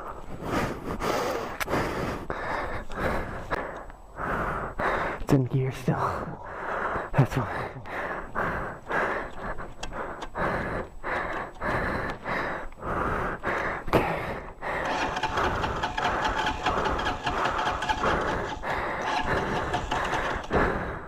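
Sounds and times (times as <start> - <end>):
motorcycle engine starting and running: 14.8 - 21.0.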